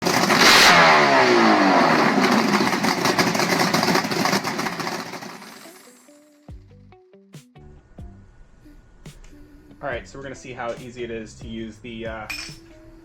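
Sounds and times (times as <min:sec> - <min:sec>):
engine revving and winding down: 0:00.0 - 0:06.0.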